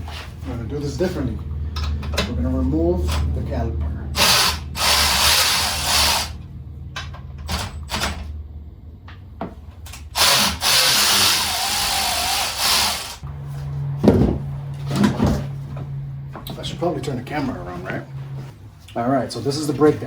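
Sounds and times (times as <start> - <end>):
power drill running: 4.2 - 6.4, 10.0 - 13.2.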